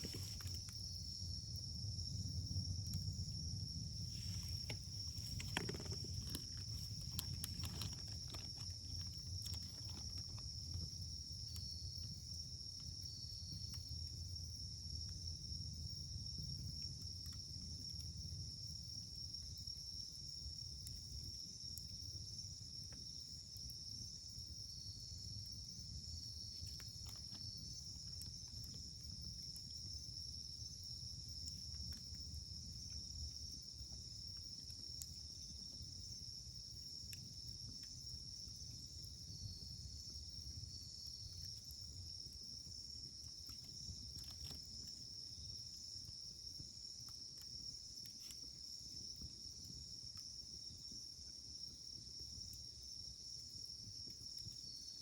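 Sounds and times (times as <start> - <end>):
wood fire crackling: 0.0 - 1.5, 2.1 - 12.2
high insect trill: 0.0 - 55.0.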